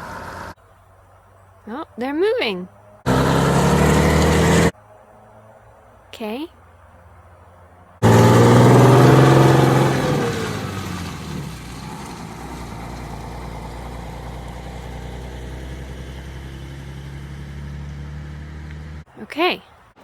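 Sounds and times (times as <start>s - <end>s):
bus diesel engine: 0.0s - 0.6s, 1.7s - 4.8s, 8.0s - 19.6s.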